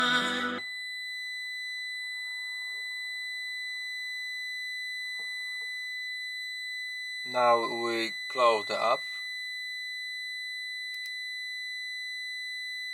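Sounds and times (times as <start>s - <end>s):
high-pitched sine test tone: 0.0s - 12.9s.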